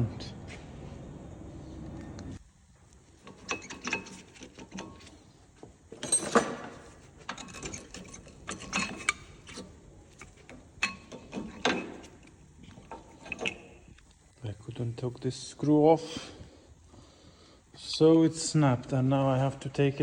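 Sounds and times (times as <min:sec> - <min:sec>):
hand tools clicking and knocking: 0:03.2 - 0:14.0.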